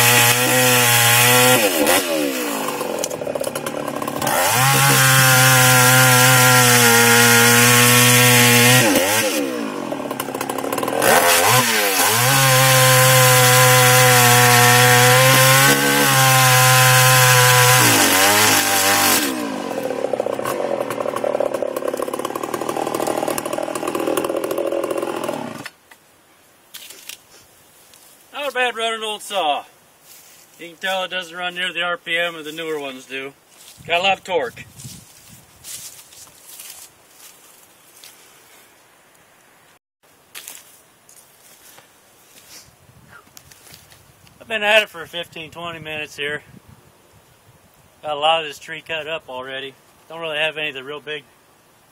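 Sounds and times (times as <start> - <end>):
chainsaw idling: 0.0 - 25.7
chainsaw cutting wood: 0.0 - 25.8.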